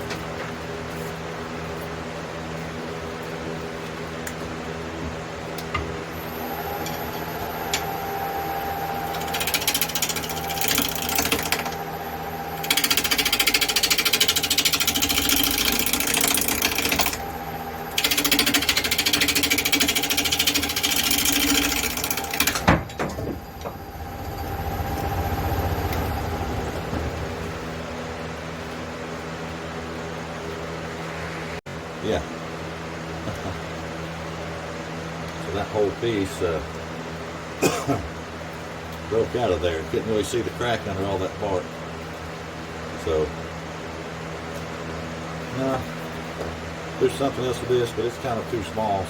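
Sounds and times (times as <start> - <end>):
wood lathe running: 6.1 - 27.8
gouge chattering on spinning wood: 8.9 - 23.8.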